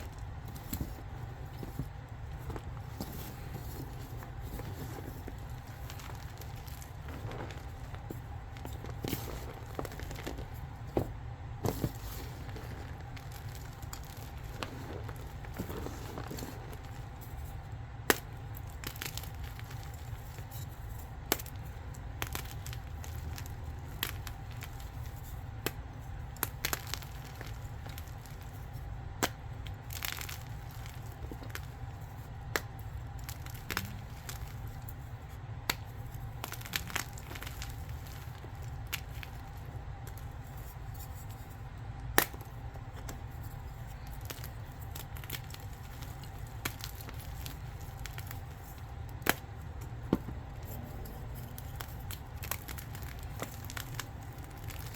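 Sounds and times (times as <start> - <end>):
chalk crushing and cracking: 0.0 - 54.9
steady low hum: 0.0 - 54.9.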